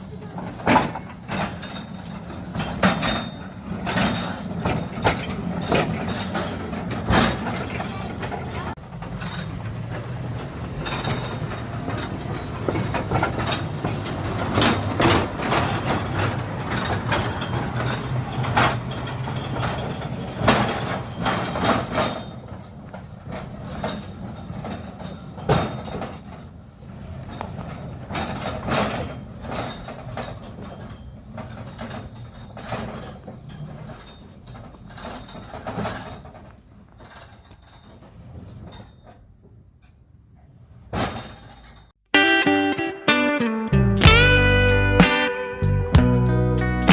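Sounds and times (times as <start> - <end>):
clicks and knocks of track: 0.0 - 26.5
locomotive running on track: 0.0 - 41.9.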